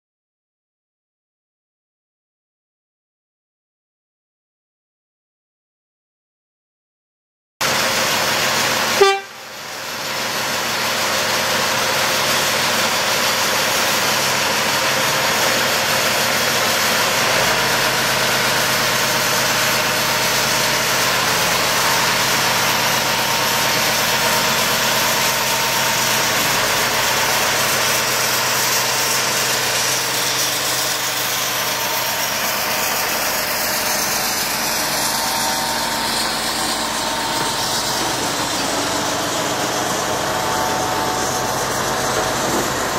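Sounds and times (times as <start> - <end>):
diesel locomotive engine running: 7.6 - 42.9
short loud sound: 9.0 - 9.5.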